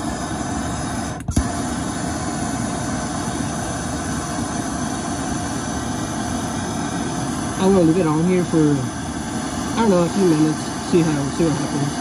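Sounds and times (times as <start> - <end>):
gas torch hissing: 0.0 - 12.0.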